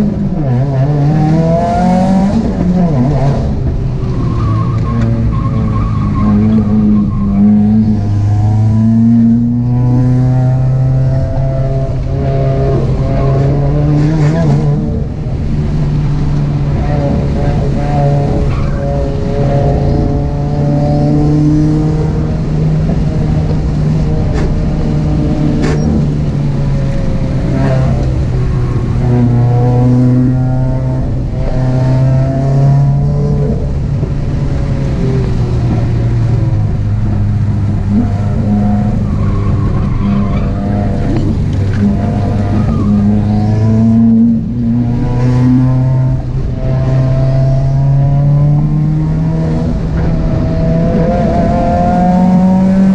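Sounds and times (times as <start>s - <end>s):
car engine revving hard: 0.0s - 3.8s, 5.0s - 52.9s
tyre squeal: 37.9s - 43.6s.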